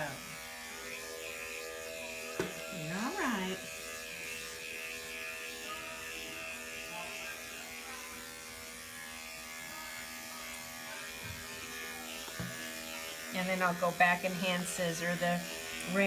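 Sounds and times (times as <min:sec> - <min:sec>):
electric clippers clipping dog fur: 0:00.0 - 0:16.0.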